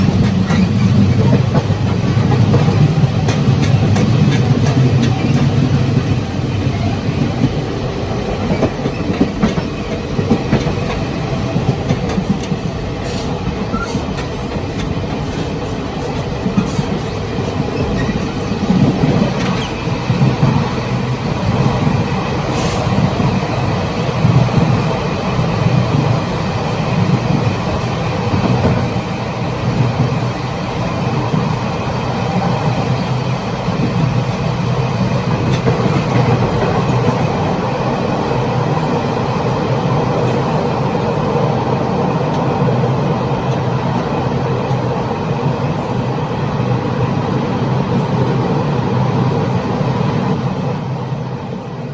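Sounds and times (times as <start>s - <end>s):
train wheels rumbling on track: 0.0s - 51.9s.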